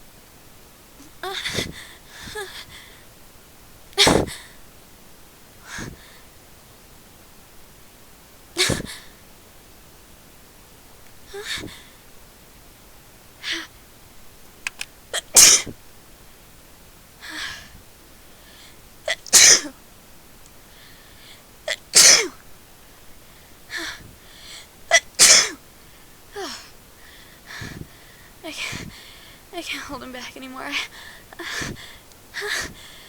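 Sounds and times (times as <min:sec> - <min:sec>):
quick catching breaths: 0:01.0 - 0:03.1, 0:04.0 - 0:04.6, 0:05.6 - 0:06.3, 0:22.9 - 0:24.8, 0:25.8 - 0:30.2, 0:30.8 - 0:33.0
woman sneezing: 0:04.0 - 0:04.5, 0:08.6 - 0:09.0, 0:15.2 - 0:15.7, 0:19.1 - 0:19.8, 0:21.7 - 0:22.4.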